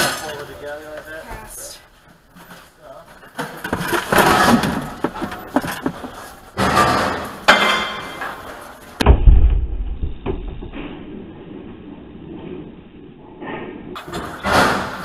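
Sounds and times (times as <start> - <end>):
scrap metal clanking and rattling: 3.2 - 8.9, 13.4 - 15.0
low rumble: 9.0 - 14.0.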